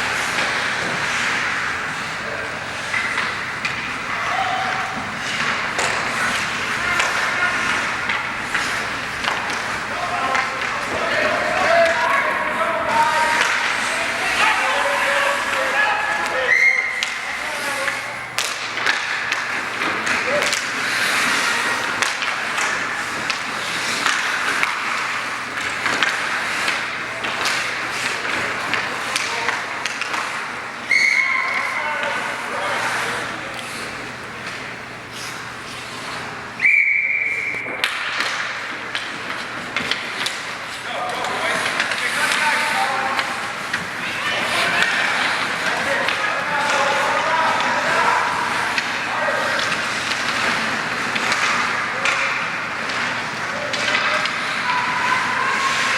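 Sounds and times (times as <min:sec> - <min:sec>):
skates scraping on ice: 0:00.0 - 0:36.6, 0:37.2 - 0:55.9
hockey sticks and puck clacking: 0:00.0 - 0:55.9
rink hubbub: 0:00.0 - 0:55.9
people shouting: 0:04.1 - 0:05.1, 0:09.8 - 0:17.9, 0:30.9 - 0:33.2, 0:53.4 - 0:55.9.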